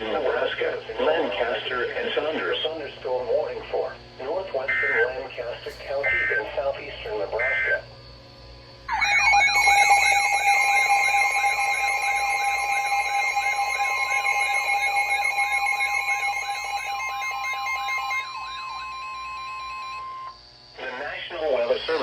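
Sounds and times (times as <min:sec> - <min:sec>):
steady alarm tone: 0:00.0 - 0:07.9, 0:08.7 - 0:20.7
steady electronic tones: 0:04.3 - 0:07.9, 0:08.8 - 0:20.5
falling siren-like sweeps: 0:08.9 - 0:20.4.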